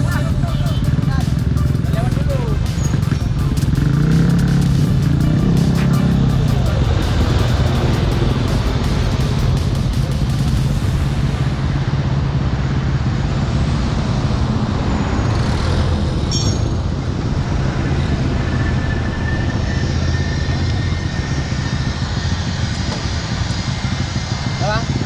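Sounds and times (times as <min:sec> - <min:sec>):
motorcycle engines idling: 0:00.0 - 0:25.0.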